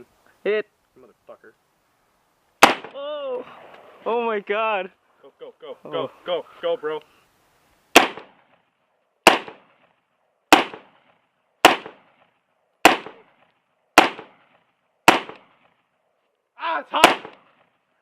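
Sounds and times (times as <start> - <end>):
gunshots with echo: 17.0 - 17.4.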